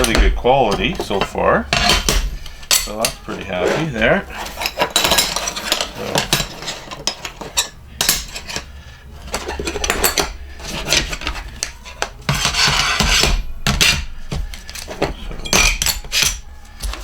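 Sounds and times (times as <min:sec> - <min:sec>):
scraping rustle: 0:00.0 - 0:13.5
metal parts clinking: 0:00.0 - 0:17.0.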